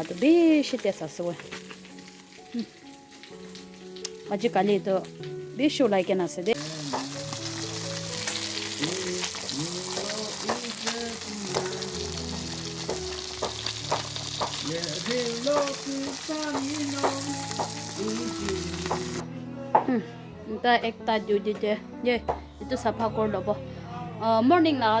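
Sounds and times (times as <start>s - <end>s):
oil crackling and spattering: 0.0s - 5.6s, 6.4s - 19.2s
food frying in hot oil: 0.0s - 19.2s
quiet melodic background tune: 0.0s - 25.0s.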